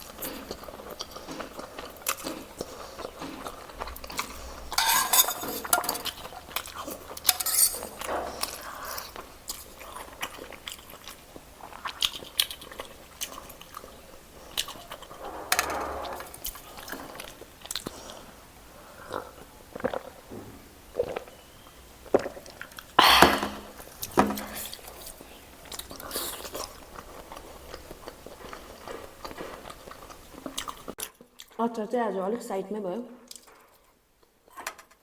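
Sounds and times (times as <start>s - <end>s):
chewing: 0.0s - 15.2s, 16.1s - 23.0s, 23.6s - 31.6s, 33.3s - 34.6s
cutlery clinking on a plate: 4.8s - 6.3s, 7.2s - 8.6s.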